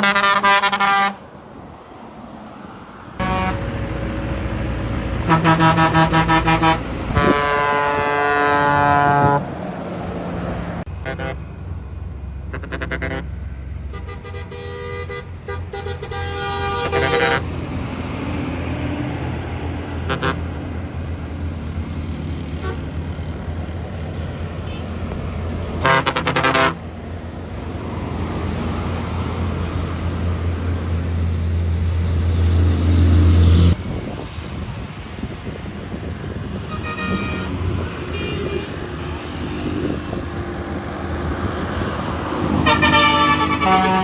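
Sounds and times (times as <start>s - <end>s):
bus air horns: 0.0s - 1.2s, 3.2s - 3.9s, 5.2s - 9.6s, 11.0s - 11.4s, 12.5s - 17.6s, 20.0s - 20.6s, 22.6s - 23.0s, 25.8s - 26.9s, 36.6s - 39.9s, 42.5s - 44.0s
bus engine drone: 0.0s - 44.0s.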